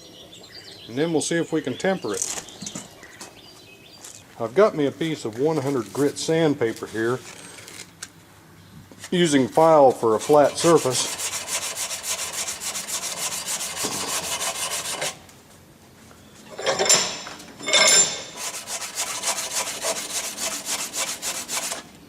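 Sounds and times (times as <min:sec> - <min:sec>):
metal scraping on sandpaper: 0:09.2 - 0:15.2, 0:18.3 - 0:21.9.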